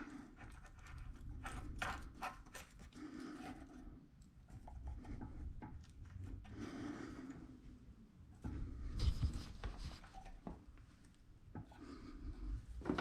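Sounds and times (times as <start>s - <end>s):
faint clicks and small knocks: 4.2s - 6.6s.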